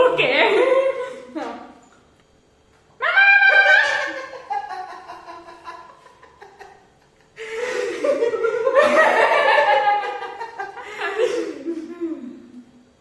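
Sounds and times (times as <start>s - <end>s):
laughter: 3.5s - 12.8s.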